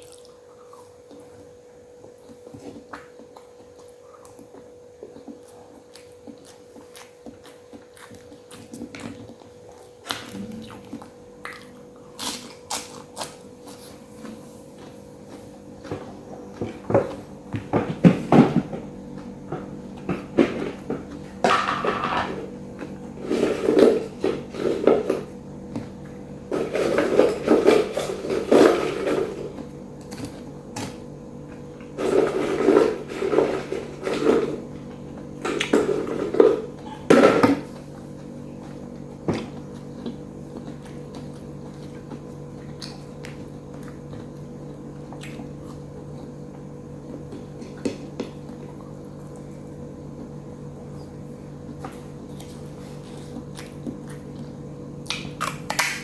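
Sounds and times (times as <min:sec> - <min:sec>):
chewing crunchy fried food: 0:00.0 - 0:56.0
steady low hum: 0:00.0 - 0:56.0.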